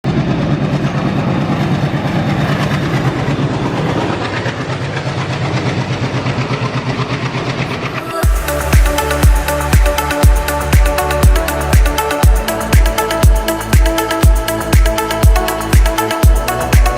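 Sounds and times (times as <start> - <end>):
rush of passing train: 0.0 - 16.9
train wheels clickety-clack: 0.1 - 16.9
electronic music with heavy beat: 8.1 - 16.9.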